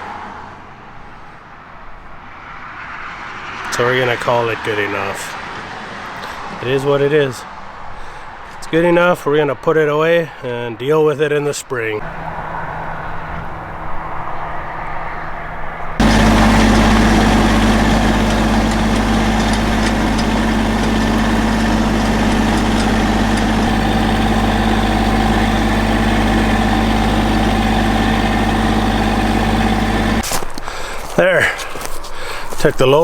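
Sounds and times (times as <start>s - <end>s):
lawn tractor engine running: 16.0s - 32.7s.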